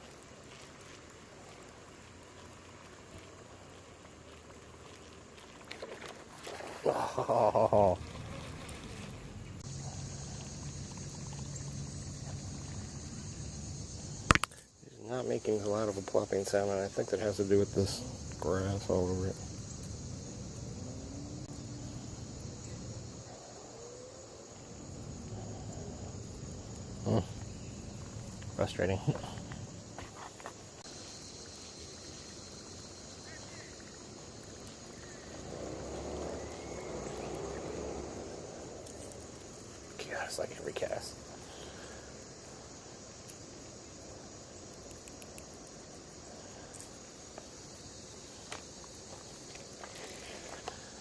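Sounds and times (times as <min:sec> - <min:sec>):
insects trilling: 0:00.0 - 0:51.0
low outdoor rumble: 0:17.3 - 0:30.0, 0:33.2 - 0:42.3
faint clicks: 0:44.7 - 0:45.8.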